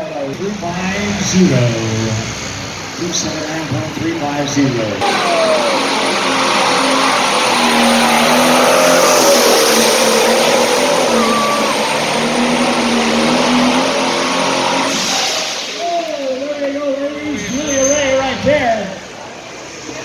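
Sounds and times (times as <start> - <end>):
tractor engine roaring at full throttle: 0.0 - 20.0
thin high whine: 5.0 - 18.9.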